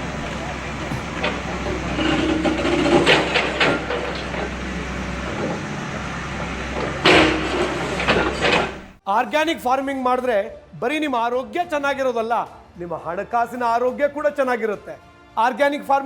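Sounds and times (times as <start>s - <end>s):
diesel engine running: 0.0s - 9.0s
sharp knocks and clanks: 0.0s - 9.0s.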